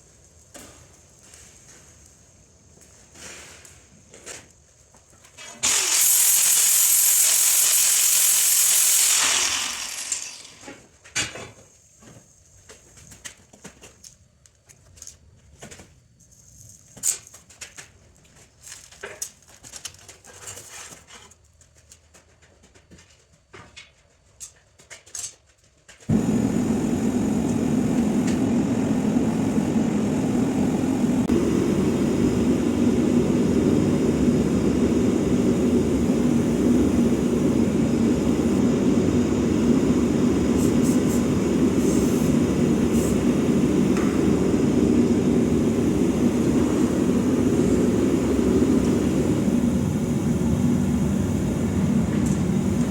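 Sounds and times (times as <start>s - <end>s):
gas forge burner rushing: 5.4s - 10.8s, 26.1s - 52.9s
loud hiss: 5.6s - 10.6s, 26.1s - 52.9s.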